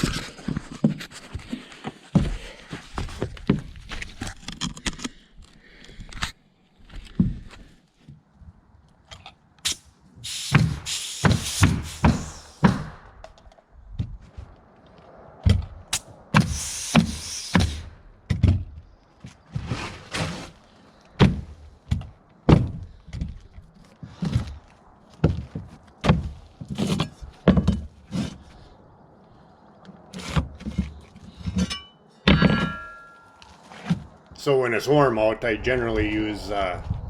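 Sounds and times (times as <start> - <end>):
air hissing: 10.2 - 12.9, 16.4 - 17.9.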